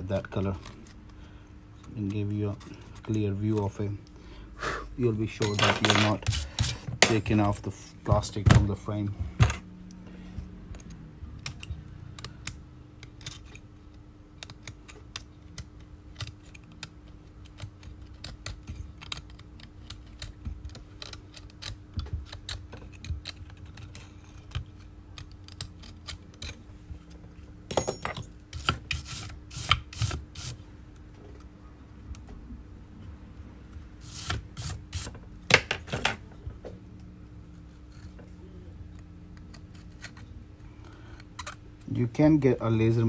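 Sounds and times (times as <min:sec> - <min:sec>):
metal blade scraping adhesive: 0:06.0 - 0:06.9, 0:28.5 - 0:30.6, 0:34.0 - 0:35.2.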